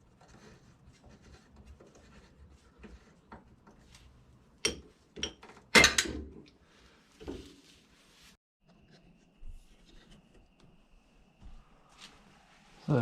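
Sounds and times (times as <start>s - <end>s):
tools knocking and clattering: 4.6s - 6.5s.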